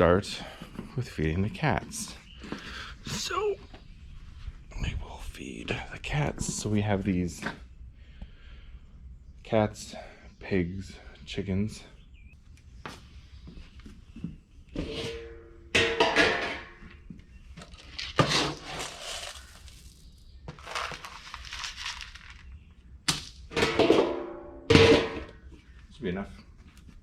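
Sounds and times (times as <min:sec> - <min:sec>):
scoop clunking and scraping container: 0:17.6 - 0:22.5
dry kibble rattling: 0:17.6 - 0:22.6.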